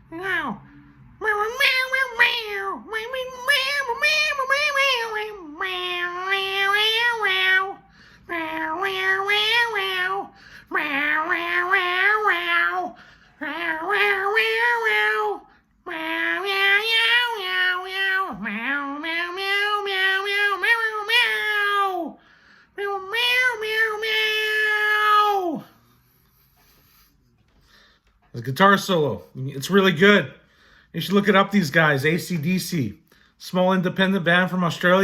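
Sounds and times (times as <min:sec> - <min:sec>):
man meowing and screeching: 0:01.2 - 0:22.2, 0:22.8 - 0:25.8.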